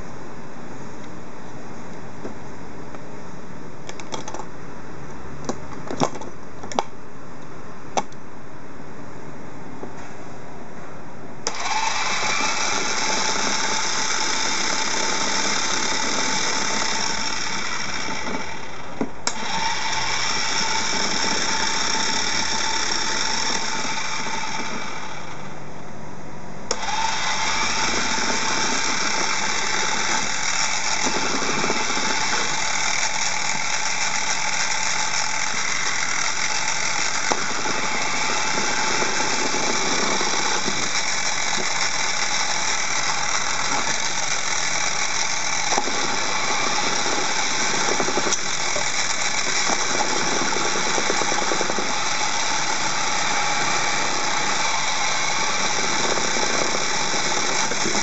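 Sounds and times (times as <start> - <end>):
spinning top whirring: 11.5 - 25.5, 26.7 - 58.0.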